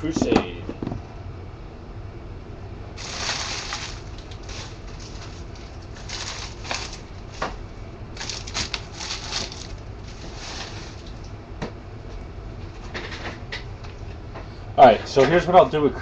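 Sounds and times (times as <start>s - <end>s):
plastic crinkling and rustling: 3.0s - 7.6s, 8.2s - 11.3s.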